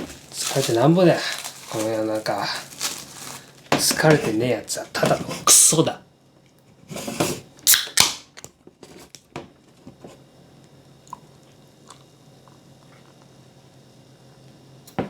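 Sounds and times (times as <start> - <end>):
rustling scraping noises: 0.0 - 5.6.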